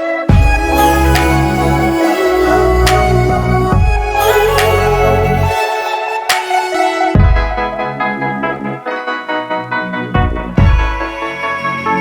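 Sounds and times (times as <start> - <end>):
held melodic notes: 0.0 - 12.0
deep bass hits: 0.3 - 5.6.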